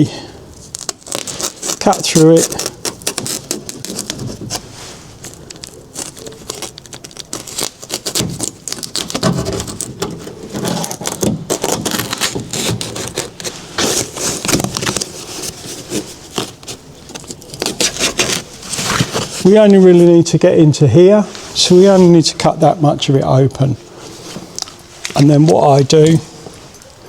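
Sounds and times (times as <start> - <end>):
knife cutting plastic sheet: 1.0 - 4.6, 5.2 - 19.4.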